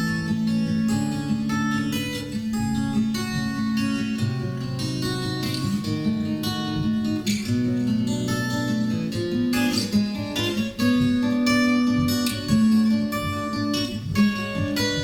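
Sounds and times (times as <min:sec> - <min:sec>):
strummed acoustic guitar: 0:00.0 - 0:15.0.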